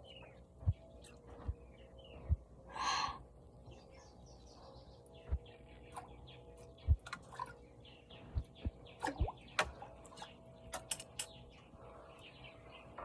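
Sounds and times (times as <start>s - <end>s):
small birds chirping: 0.0s - 13.0s
dull low thumps: 0.6s - 2.5s, 5.2s - 5.5s, 6.8s - 7.1s.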